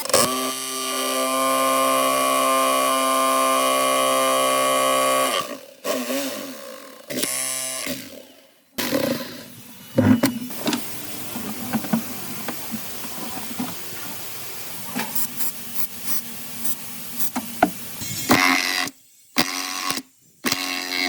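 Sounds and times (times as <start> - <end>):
scraping and handling noise: 10.0 - 15.4
power tool motor running: 10.5 - 14.4, 15.1 - 21.0.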